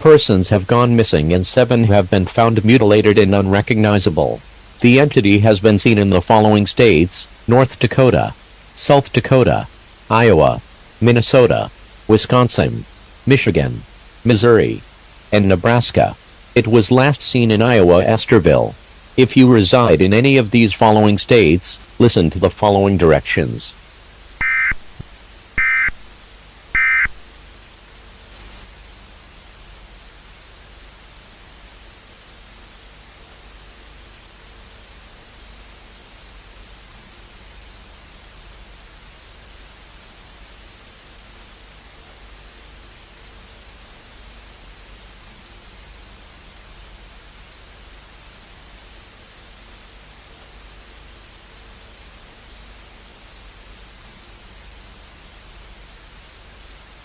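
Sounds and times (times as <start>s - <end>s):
static hiss: 0.0s - 57.0s
digital data tones: 24.4s - 24.9s, 25.6s - 26.0s, 26.8s - 27.2s.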